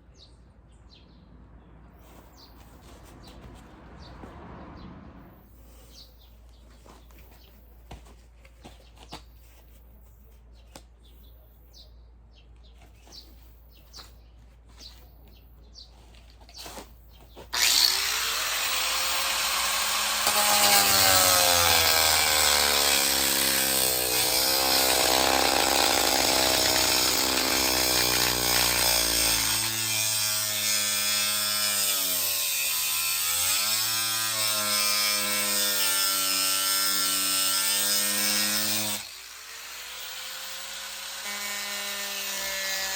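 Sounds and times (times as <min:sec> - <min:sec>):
electric power saw cutting: 0:17.5 - 0:42.9.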